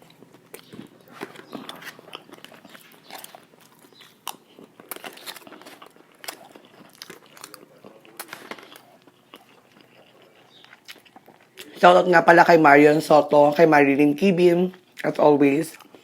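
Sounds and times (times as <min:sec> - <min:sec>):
crunchy chewing: 0:00.0 - 0:11.8, 0:15.7 - 0:16.0.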